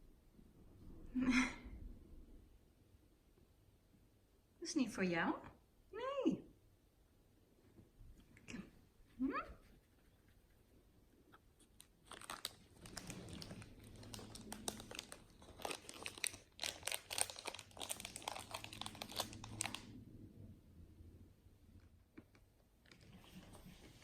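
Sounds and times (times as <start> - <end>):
crinkly material crumpled and torn: 11.6 - 20.0.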